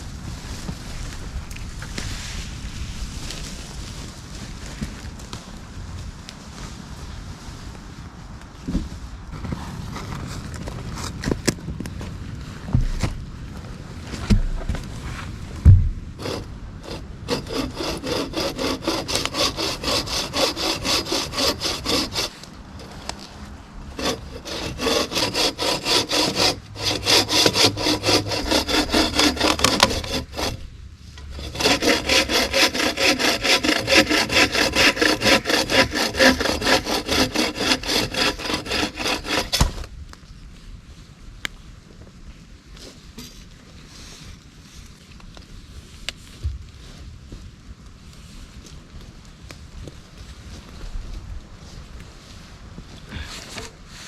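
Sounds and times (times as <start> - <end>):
hand saw cutting wood: 16.2 - 23.0, 24.0 - 30.6, 31.2 - 39.9.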